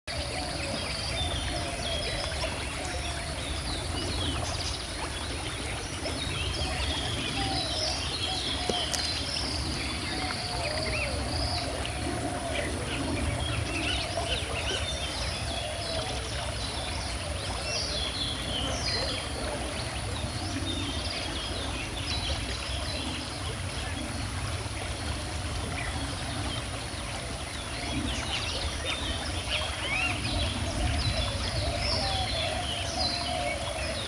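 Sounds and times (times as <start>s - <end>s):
birds chirping: 0.1s - 23.2s
river water flowing: 0.1s - 34.0s.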